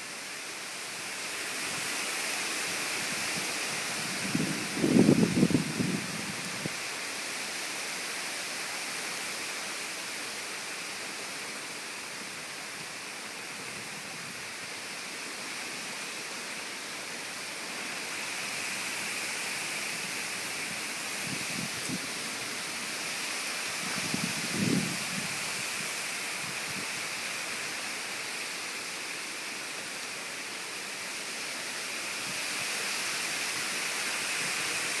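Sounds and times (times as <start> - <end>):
heavy rain pouring: 0.0 - 35.0
wind buffeting microphone: 4.0 - 6.7, 23.8 - 25.6.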